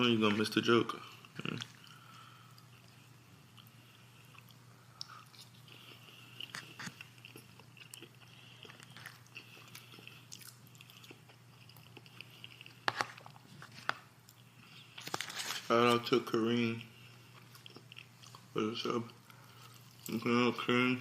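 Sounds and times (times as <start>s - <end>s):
steady low hum: 0.0s - 21.0s
chewing and biting food: 1.2s - 15.4s, 16.8s - 18.5s.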